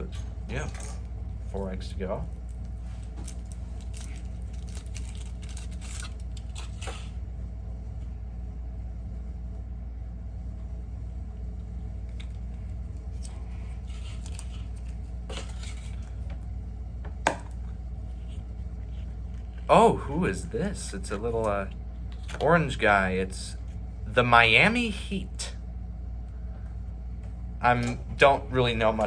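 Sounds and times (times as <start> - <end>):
steady low hum: 0.0 - 29.0
foil wrapper crinkling and tearing: 2.5 - 7.1.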